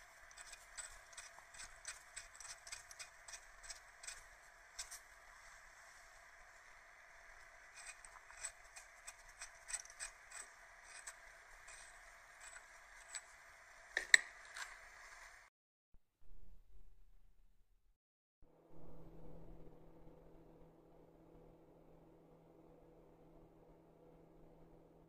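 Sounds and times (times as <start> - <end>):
steady hiss: 0.0 - 15.5.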